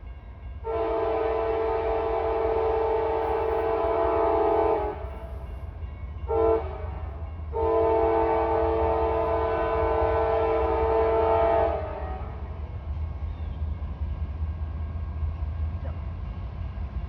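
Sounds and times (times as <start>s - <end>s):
locomotive horn blasts: 0.6s - 5.3s, 6.3s - 12.5s.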